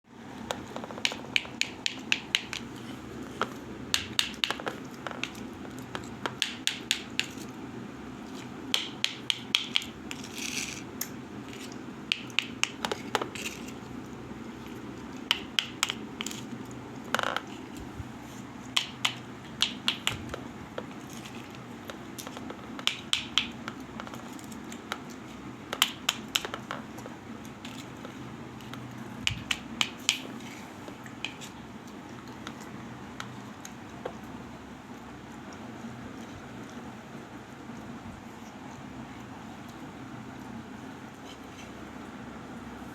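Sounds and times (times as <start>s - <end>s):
steady low hum: 0.1s - 42.9s
utensils tapping miniature pots: 0.4s - 2.8s, 3.4s - 7.6s, 8.8s - 13.8s.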